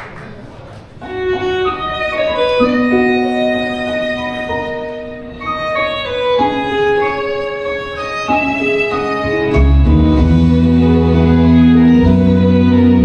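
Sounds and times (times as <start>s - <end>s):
soft accompaniment: 1.0s - 13.0s
violin slow melody: 1.0s - 13.0s.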